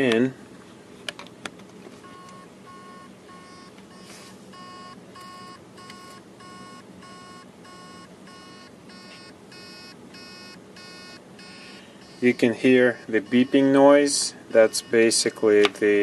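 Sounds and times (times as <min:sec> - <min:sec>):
hard drive beeping: 0:02.0 - 0:16.0
person speaking: 0:12.1 - 0:16.0.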